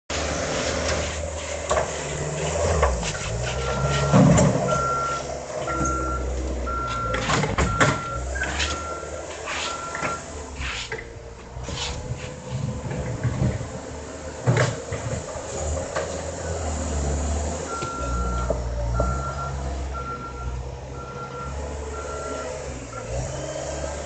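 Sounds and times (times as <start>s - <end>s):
diesel engine under load: 0.1s - 24.0s
machine and bucket clanking: 0.2s - 19.3s
reverse alarm beeping: 3.6s - 10.3s, 17.7s - 23.2s.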